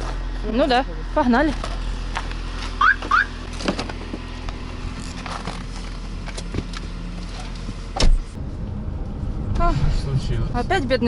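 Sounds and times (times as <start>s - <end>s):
car engine driving off: 0.0s - 11.0s
road noise: 0.0s - 11.0s
loud thump: 8.0s - 8.6s.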